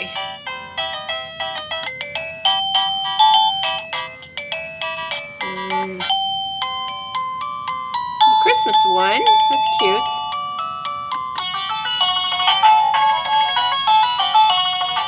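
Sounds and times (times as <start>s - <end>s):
doorbell chime melody: 0.0s - 15.0s.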